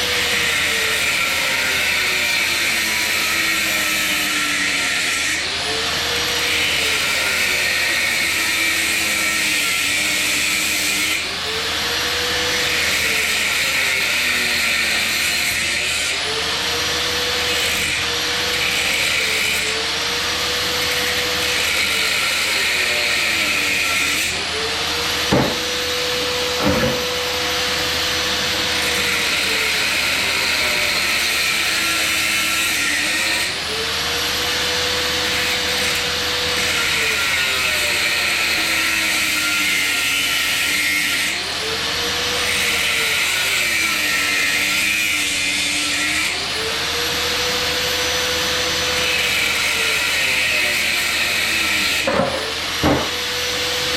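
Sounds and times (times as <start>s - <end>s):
power tool cutting metal: 0.0s - 53.9s
sharp knocks: 25.3s - 25.7s, 26.6s - 27.1s, 52.1s - 53.2s.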